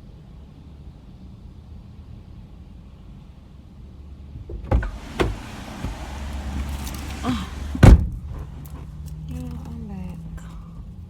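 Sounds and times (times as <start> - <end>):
steady hiss from outside: 0.0 - 11.0
car door opening: 4.5 - 8.9
car door shutting: 4.5 - 8.9
rustling: 4.8 - 10.6.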